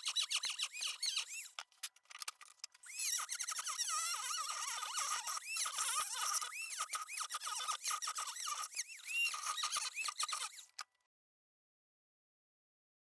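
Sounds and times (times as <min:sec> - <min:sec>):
table saw blade squealing whine: 0:02.9 - 0:10.7.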